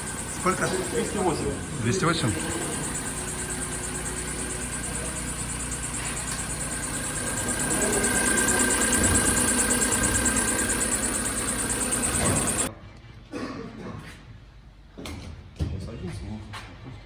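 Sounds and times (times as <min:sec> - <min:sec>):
car engine idling: 0:00.0 - 0:12.7
pulsing belt squeak: 0:00.0 - 0:12.7.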